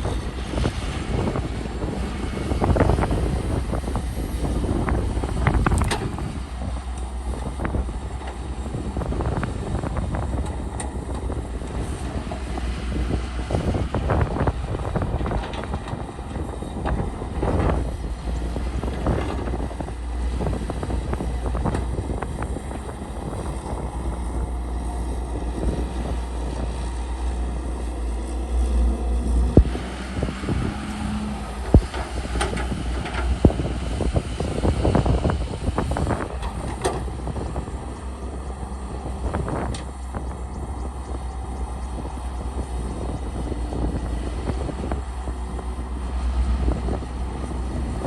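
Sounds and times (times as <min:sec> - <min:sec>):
excavator diesel engine running: 0:00.0 - 0:48.0.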